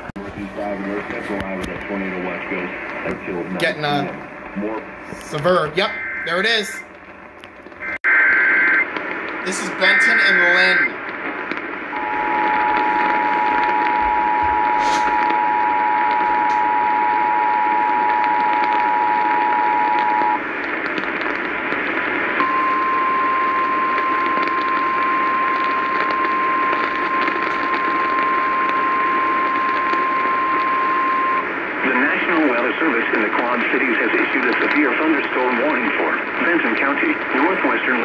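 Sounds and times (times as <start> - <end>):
radio static hiss: 0.0 - 38.0
steady warning alarm tone: 5.5 - 6.9, 9.5 - 11.0, 11.9 - 20.4, 22.4 - 31.5.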